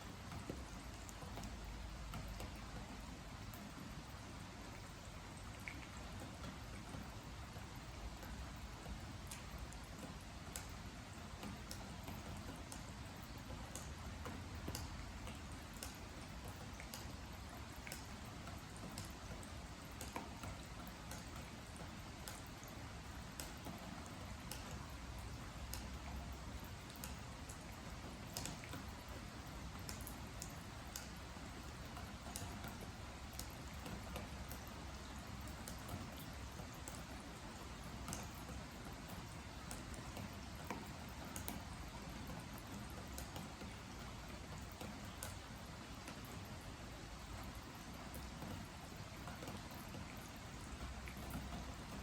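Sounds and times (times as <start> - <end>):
steady rain hiss: 0.0 - 52.0.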